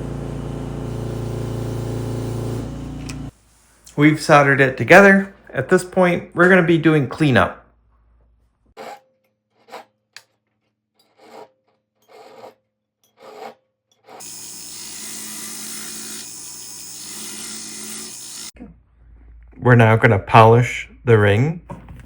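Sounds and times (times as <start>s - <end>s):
file scraping metal ring: 8.8s - 10.0s, 11.0s - 18.6s
small motorised tool humming: 14.2s - 18.6s.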